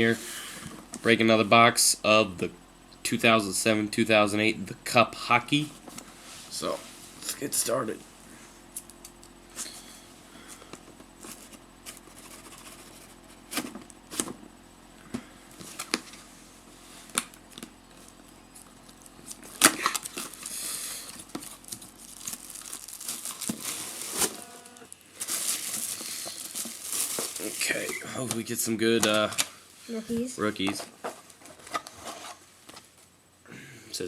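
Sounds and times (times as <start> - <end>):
plastic wrapping crinkling: 17.2 - 28.4.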